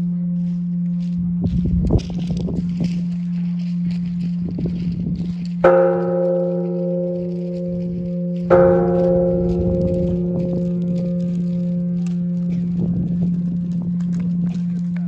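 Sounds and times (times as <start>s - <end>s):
low steady hum: 0.0s - 15.0s
temple bell ringing: 4.8s - 15.0s.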